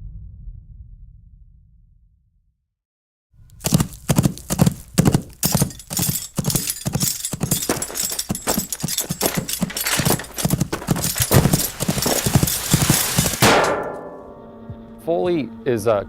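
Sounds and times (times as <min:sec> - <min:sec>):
horse hoofbeats: 0:03.6 - 0:13.9.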